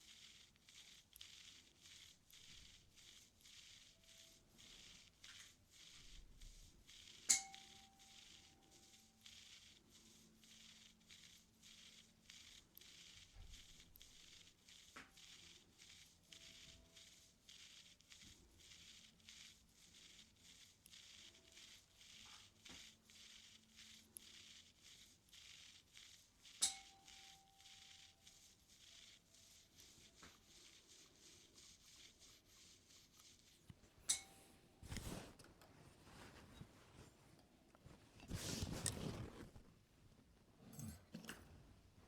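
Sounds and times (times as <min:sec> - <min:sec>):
ear tools scraping in ear: 0:37.8 - 0:39.6.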